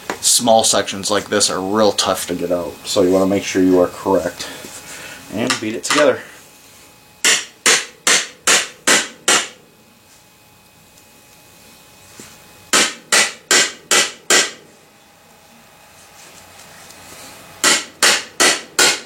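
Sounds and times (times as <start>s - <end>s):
hammer blows on pipe fittings: 7.2s - 9.6s, 12.7s - 14.6s, 17.6s - 19.0s.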